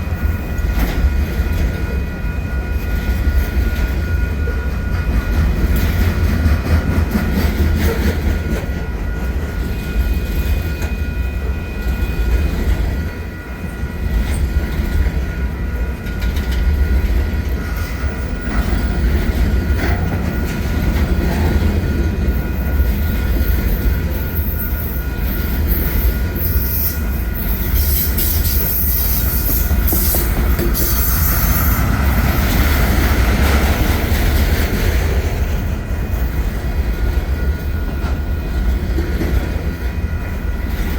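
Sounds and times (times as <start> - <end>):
freight train rumble: 0.0 - 40.9
high-pitched wheel squeal: 23.6 - 32.9.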